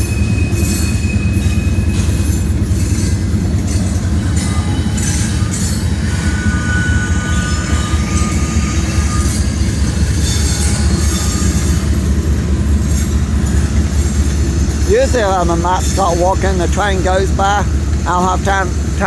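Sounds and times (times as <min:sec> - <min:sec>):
freight train rumbling: 0:00.0 - 0:19.0
train wheel squeal: 0:00.0 - 0:19.0.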